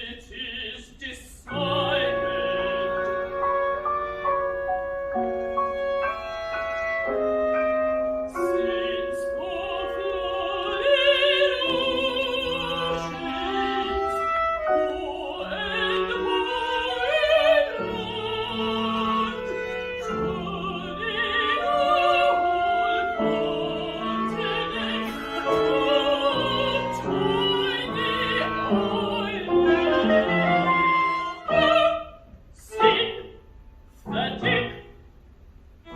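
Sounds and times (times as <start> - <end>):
operatic singing with vibrato: 0.0 - 35.0
instrumental accompaniment: 1.5 - 10.9.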